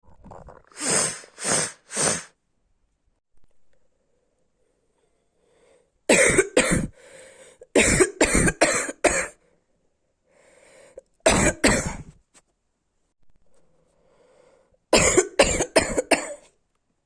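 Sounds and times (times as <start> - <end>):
woman coughing: 6.1 - 7.0, 7.7 - 9.4, 11.3 - 12.1, 15.0 - 16.5.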